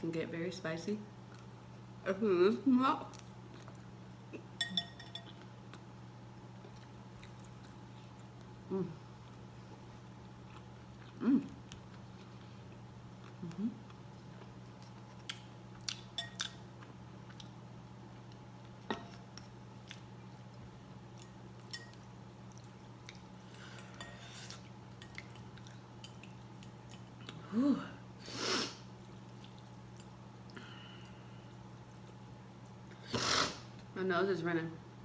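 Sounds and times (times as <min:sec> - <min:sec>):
steady low hum: 0:00.0 - 0:35.0
soft mouth noises: 0:13.2 - 0:14.0
person blowing air out: 0:28.2 - 0:28.8, 0:33.0 - 0:33.7.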